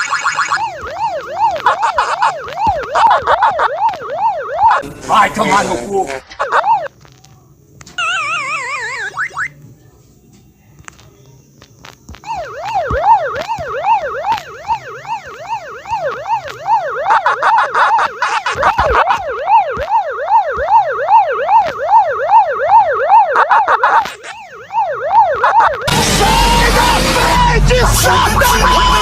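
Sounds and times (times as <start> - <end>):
warbling siren wail: 0.0 - 6.9, 12.2 - 29.0
sudden loud noise burst: 25.9 - 29.0.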